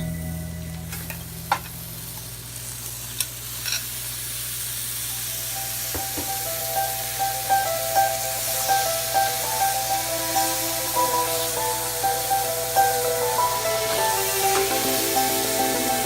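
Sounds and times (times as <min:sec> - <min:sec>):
soft background music: 0:00.0 - 0:02.1, 0:05.4 - 0:16.0
food sizzling in a pan: 0:00.0 - 0:16.0.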